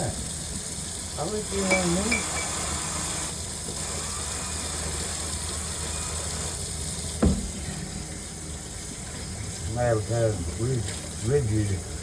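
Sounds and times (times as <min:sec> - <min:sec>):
running water hissing: 0:00.0 - 0:12.0
thump: 0:07.2 - 0:07.6.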